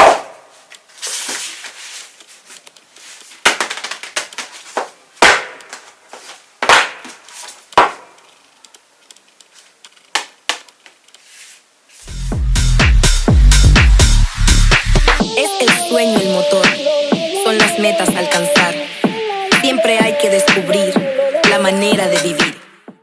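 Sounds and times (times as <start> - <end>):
packaging rustling: 0.5 - 11.6.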